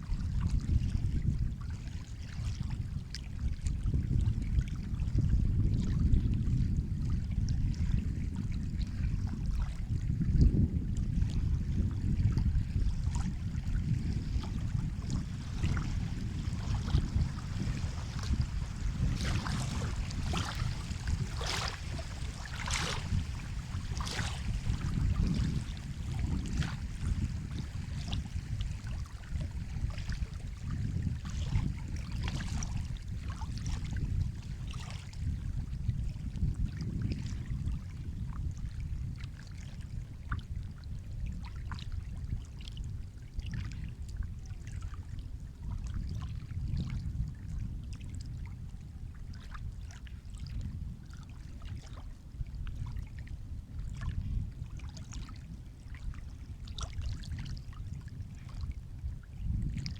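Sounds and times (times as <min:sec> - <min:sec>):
sea water splashing: 0:12.7 - 0:30.7
surf rumbling: 0:14.2 - 0:27.5.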